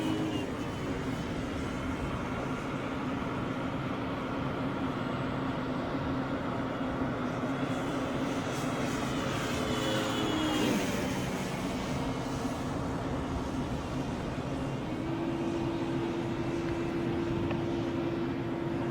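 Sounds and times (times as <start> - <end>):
model plane motor whining: 0.0 - 3.0, 7.7 - 18.1
wind noise on microphone: 0.0 - 3.4, 10.6 - 18.4.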